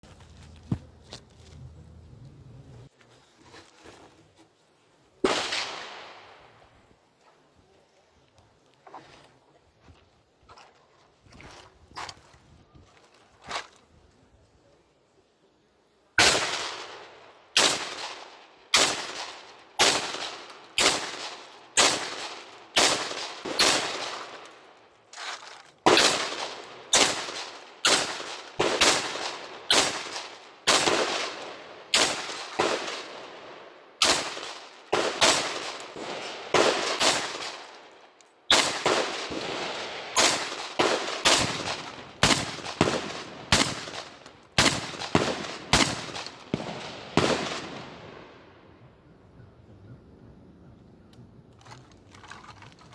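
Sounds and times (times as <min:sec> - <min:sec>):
shotgun shots echoing: 0:05.2 - 0:06.5, 0:16.2 - 0:24.7, 0:25.8 - 0:37.9, 0:38.5 - 0:48.4.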